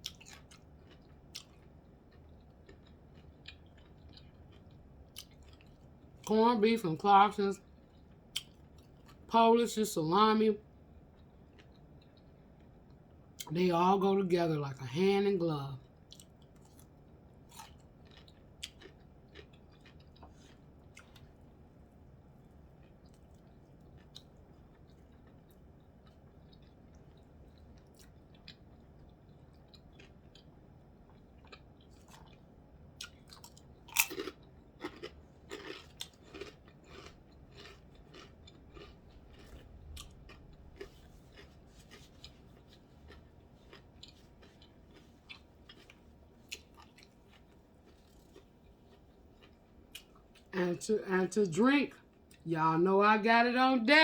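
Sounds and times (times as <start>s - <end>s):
soft chewing: 0.0s - 6.4s, 7.6s - 9.3s, 10.6s - 13.5s, 15.8s - 50.6s, 51.9s - 52.5s
crunchy bite and chewing: 16.1s - 21.4s, 33.0s - 50.5s.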